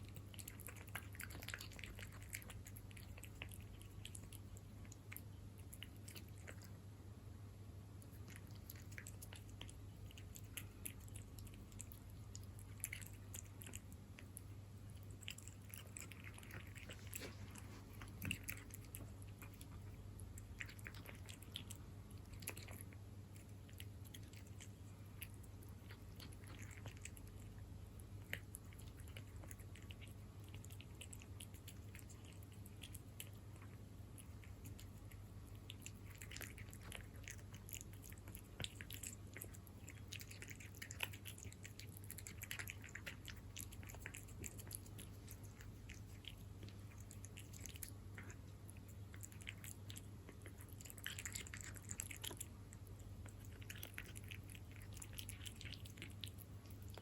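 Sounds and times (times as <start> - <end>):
teeth and tongue clicks: 0.0 - 6.8, 8.0 - 17.3, 18.0 - 57.0
cat chewing wet food: 0.0 - 57.0
faint low hum: 0.0 - 57.0.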